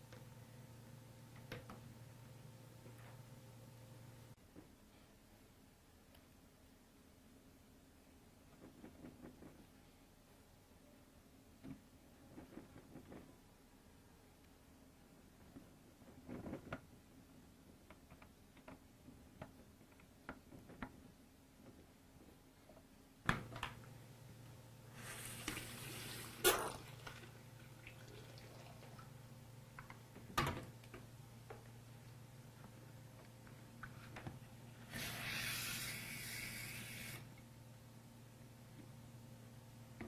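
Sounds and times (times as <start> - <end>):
water hissing through valve: 24.9 - 27.3, 34.8 - 37.3.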